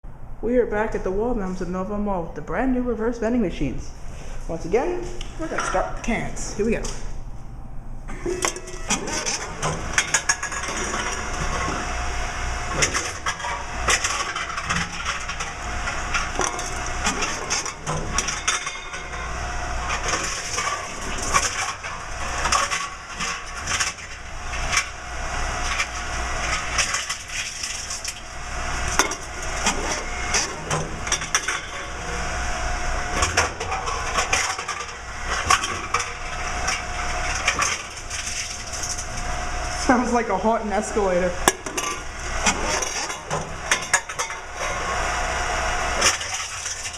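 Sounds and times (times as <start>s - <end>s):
machine running: 6.5s - 46.9s
cans clattering and crunching: 12.7s - 32.4s, 33.0s - 39.4s.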